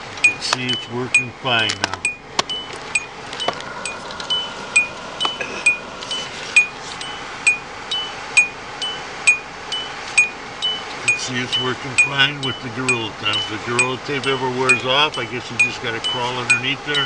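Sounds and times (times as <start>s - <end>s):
dashboard warning chime dinging: 0.0s - 17.0s.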